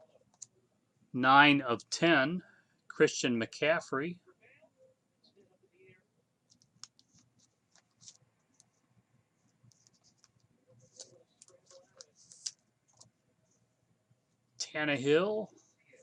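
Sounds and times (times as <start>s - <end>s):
trading cards clicking and rustling: 6.5s - 8.7s, 9.7s - 13.1s.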